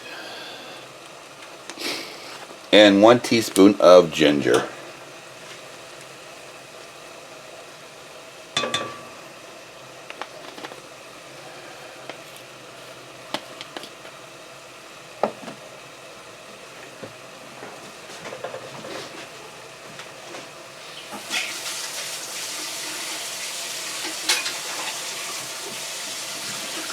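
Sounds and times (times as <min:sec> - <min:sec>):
food sizzling in hot oil: 0:20.8 - 0:26.9.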